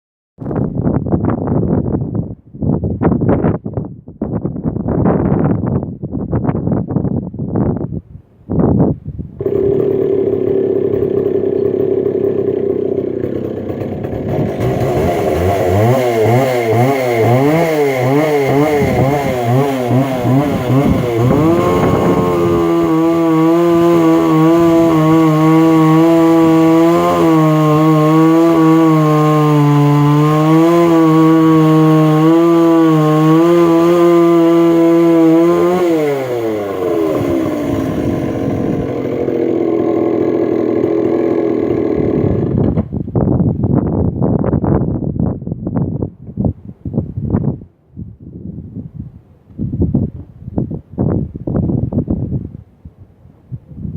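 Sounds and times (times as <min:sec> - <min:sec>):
chainsaw engine revving: 0:09.4 - 0:43.0.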